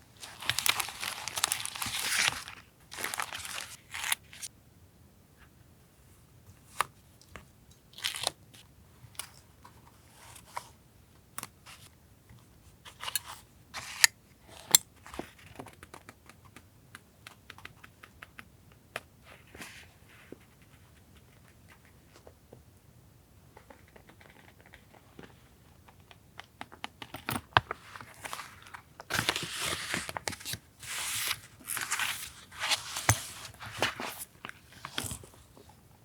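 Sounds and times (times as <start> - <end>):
paper rustling and crinkling: 0.1 - 4.5, 27.5 - 35.7.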